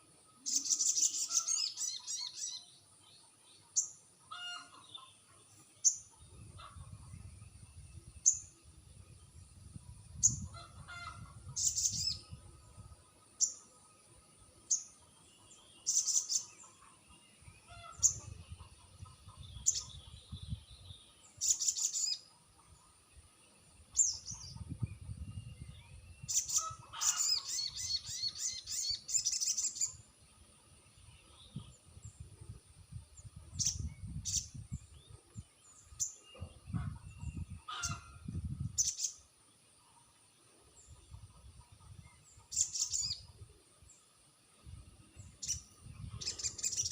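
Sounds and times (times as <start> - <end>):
bird chirping and chattering: 26.2 - 30.0, 45.4 - 46.9.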